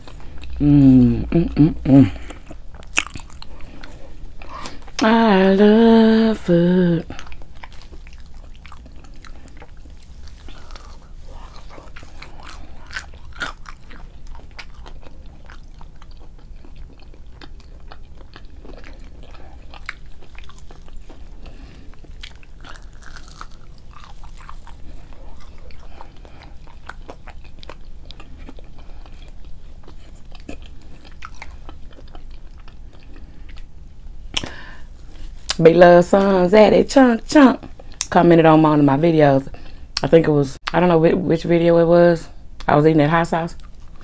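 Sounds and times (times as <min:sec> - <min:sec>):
chewing and biting food: 0:02.1 - 0:05.0, 0:07.1 - 0:35.6.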